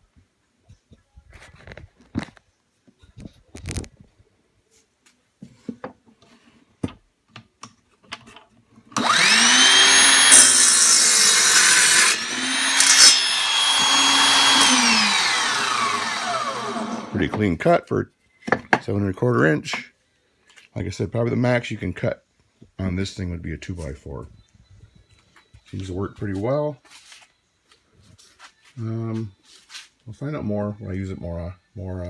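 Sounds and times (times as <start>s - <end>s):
miter saw motor whining: 9.0s - 17.4s
saw cutting through wood: 9.0s - 17.4s.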